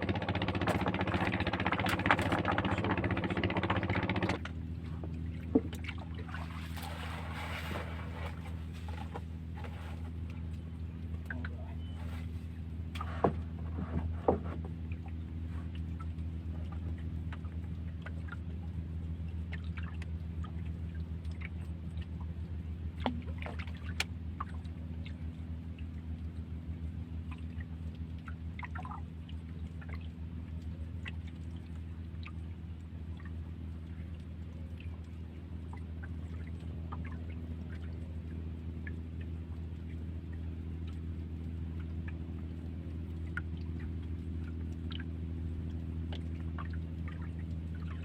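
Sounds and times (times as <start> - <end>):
water gurgling: 0.0 - 8.4
boat engine running: 0.0 - 48.0.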